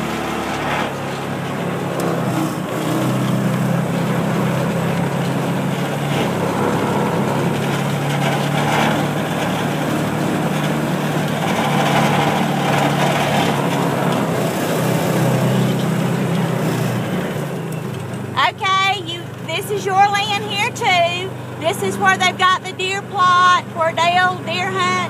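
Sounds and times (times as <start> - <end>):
rattle and road noise: 0.0 - 25.0
small vehicle engine running: 0.0 - 25.0.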